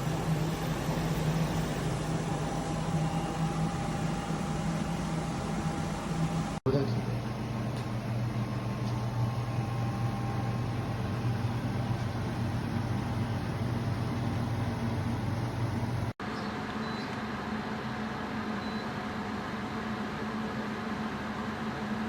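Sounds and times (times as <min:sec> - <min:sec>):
air conditioner humming: 0:00.0 - 0:16.2.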